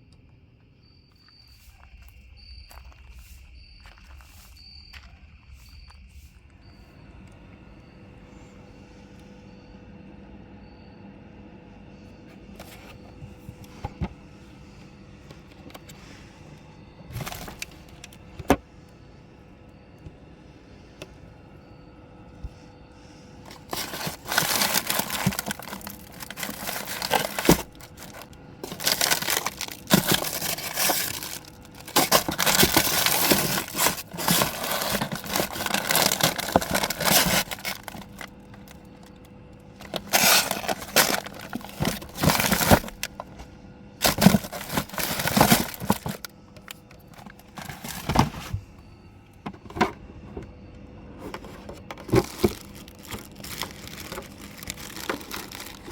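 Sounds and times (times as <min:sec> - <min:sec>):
packaging crinkling and tearing: 0:17.1 - 0:18.2, 0:23.5 - 0:39.2, 0:39.8 - 0:43.4, 0:44.0 - 0:48.5, 0:51.2 - 0:55.9.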